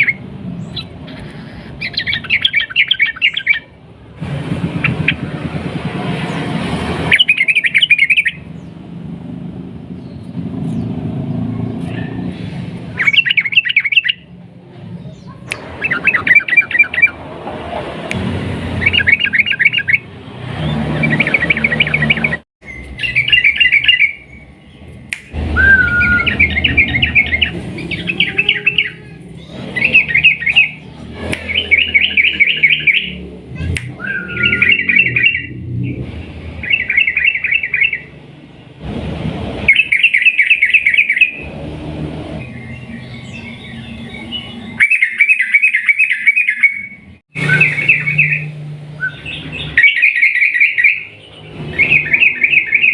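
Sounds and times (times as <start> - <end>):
bulbul singing chattering trills: 0.0 - 3.7, 7.1 - 8.8, 12.9 - 14.3, 18.8 - 38.2, 42.4 - 52.9.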